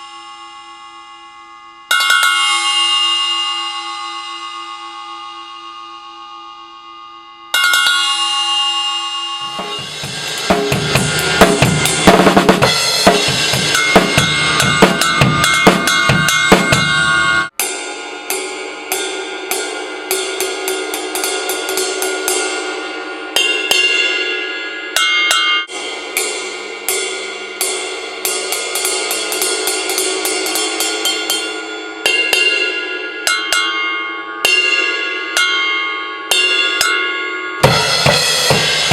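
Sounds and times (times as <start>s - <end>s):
bell cymbal ringing: 0.0s - 38.9s
drum kit playing: 9.4s - 17.7s, 37.6s - 38.9s.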